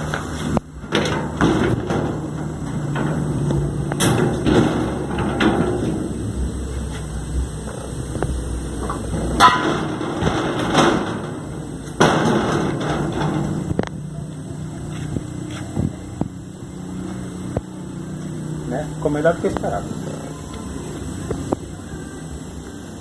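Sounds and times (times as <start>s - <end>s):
low steady hum: 0.0s - 23.0s
knocks and thuds: 0.8s - 6.2s, 8.8s - 13.9s.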